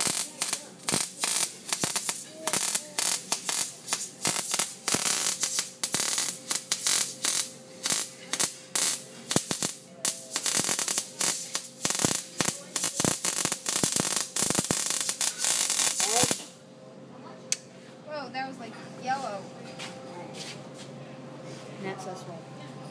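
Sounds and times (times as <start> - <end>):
welding arc crackling: 0.0 - 16.6.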